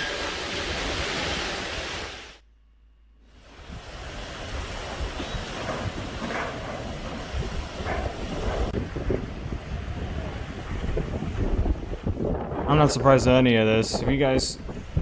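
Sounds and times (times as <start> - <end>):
wind gusts buffeting microphone: 3.5 - 15.0.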